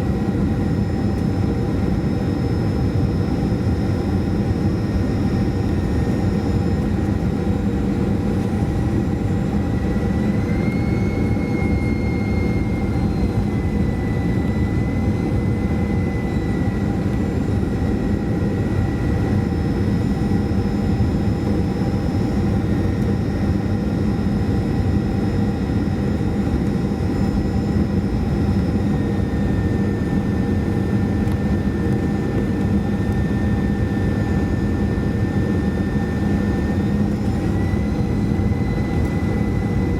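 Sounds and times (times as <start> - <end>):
airplane cabin engine roar: 0.0 - 39.9.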